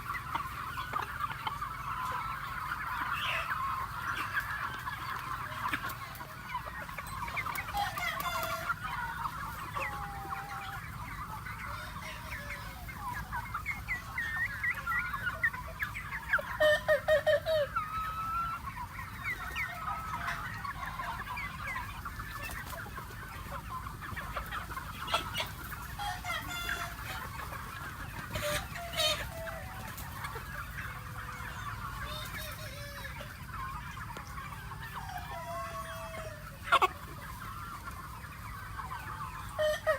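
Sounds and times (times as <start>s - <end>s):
chickens clucking and calling: 0.0s - 39.9s.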